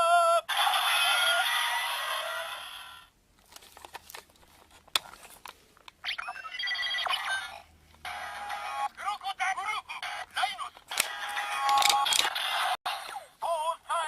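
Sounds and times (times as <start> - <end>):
sharp plastic clicks: 10.8 - 12.4.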